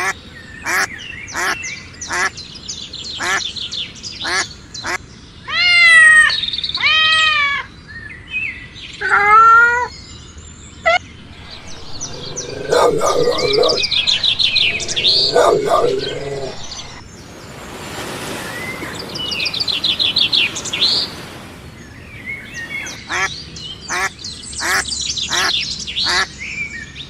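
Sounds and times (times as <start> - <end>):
birds twittering: 11.2 - 17.0
long drawn-out animal calls: 11.3 - 17.0.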